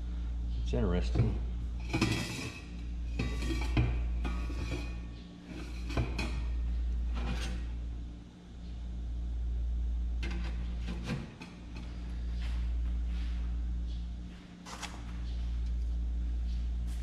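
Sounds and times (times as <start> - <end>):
steady low hum: 0.0 - 17.0
metal stove parts clinking: 1.8 - 7.7.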